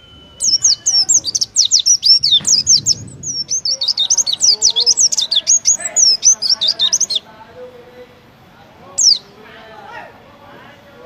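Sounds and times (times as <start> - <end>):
bird singing high chirps and whistles: 0.0 - 7.2, 9.0 - 9.3.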